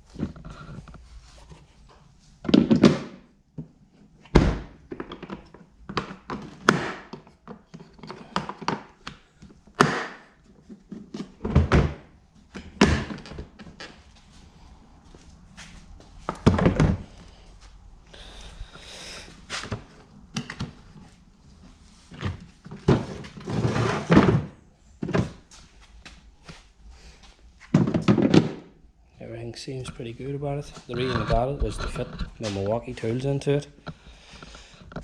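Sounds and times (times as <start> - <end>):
plastic toolboxes thunking: 2.4 - 14.0, 16.2 - 17.2, 22.1 - 25.5, 27.6 - 28.8.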